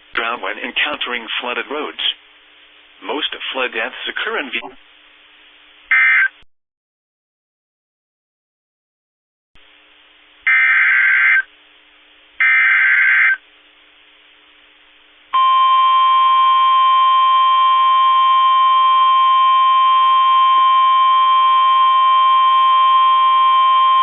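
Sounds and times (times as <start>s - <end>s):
faint radio hiss: 0.0s - 6.3s
steady warning alarm tone: 10.5s - 11.5s, 12.4s - 13.4s, 15.4s - 24.0s.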